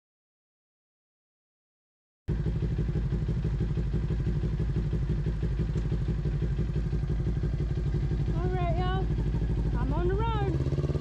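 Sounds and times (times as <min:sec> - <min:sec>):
motorcycle engine running: 0:02.3 - 0:11.0.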